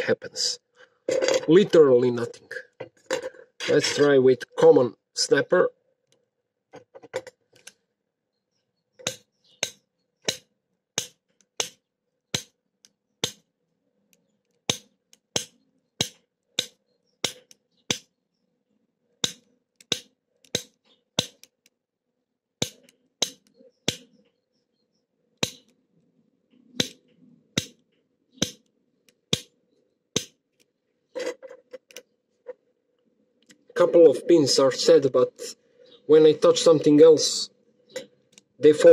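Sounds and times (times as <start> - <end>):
snap gun snapping in padlock: 9.0 - 13.5, 14.6 - 18.0, 19.2 - 21.7, 25.4 - 25.7.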